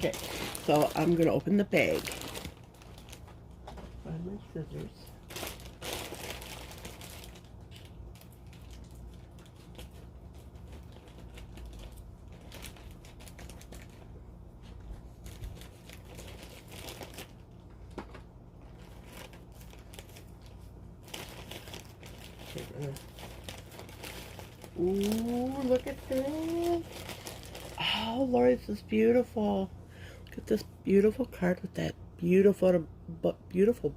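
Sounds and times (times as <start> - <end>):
bag rustling and crinkling: 0.0 - 3.4, 5.2 - 17.6, 18.6 - 28.1.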